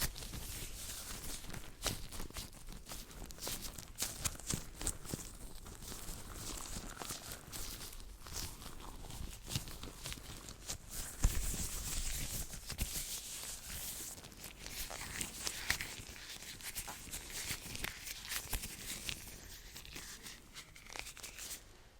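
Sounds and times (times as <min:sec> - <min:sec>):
hands rubbing and brushing: 0:10.5 - 0:21.8.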